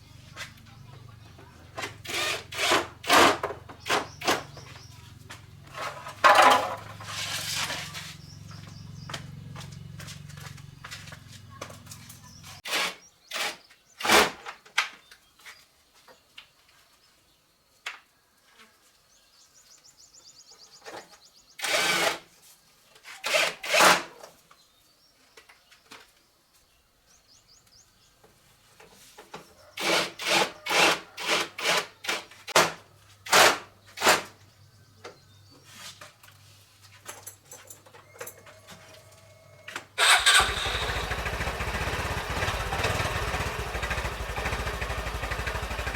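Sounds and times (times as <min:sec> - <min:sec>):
motorbike engine starting and running: 0:00.1 - 0:12.7, 0:38.1 - 0:45.9.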